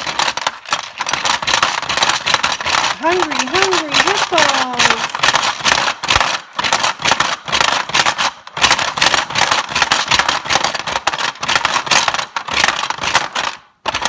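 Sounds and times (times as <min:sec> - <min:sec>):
marbles rattling on plastic board: 0:00.0 - 0:14.0
plastic levers and jaws clacking: 0:00.0 - 0:14.0.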